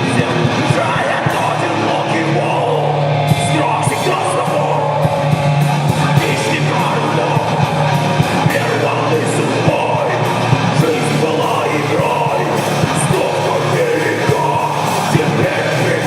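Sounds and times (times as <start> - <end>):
guitar: 0.0 - 16.0
person singing or yelling: 0.0 - 16.0
steady drum beat: 0.0 - 16.0.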